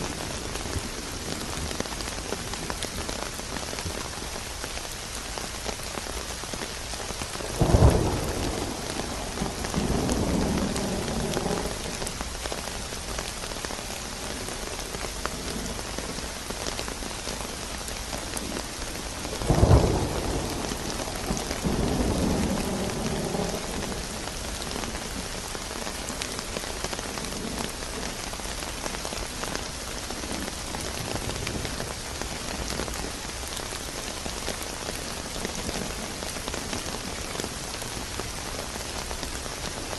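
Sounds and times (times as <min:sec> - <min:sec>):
steady rain: 0:00.0 - 0:39.9
thunderclaps with rumble: 0:07.4 - 0:12.6, 0:19.3 - 0:28.1.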